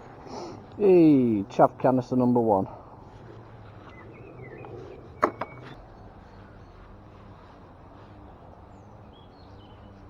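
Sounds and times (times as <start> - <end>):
bird chirps: 3.8 - 6.9.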